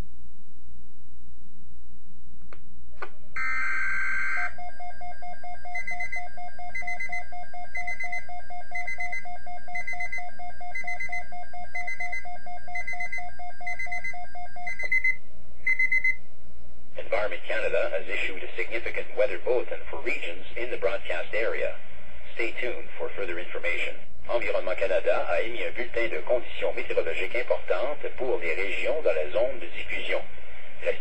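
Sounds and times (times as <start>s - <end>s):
high beeps: 3.4s - 16.2s.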